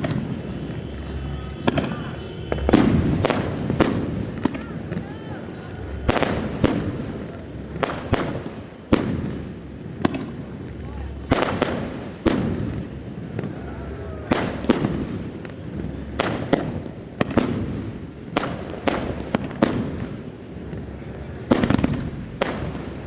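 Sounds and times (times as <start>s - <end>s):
firework shells bursting: 0.0s - 13.5s, 21.5s - 23.0s.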